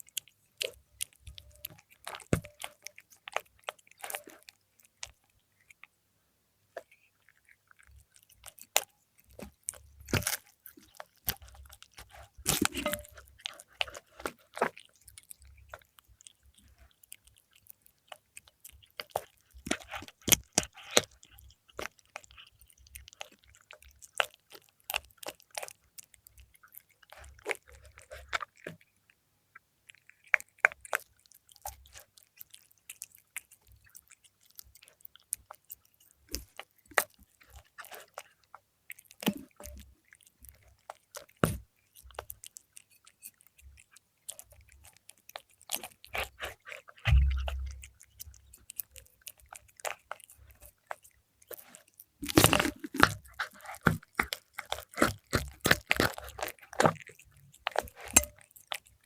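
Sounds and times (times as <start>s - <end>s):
cat chewing and crunching fish: 0.0s - 59.0s
low thud: 47.1s - 47.8s.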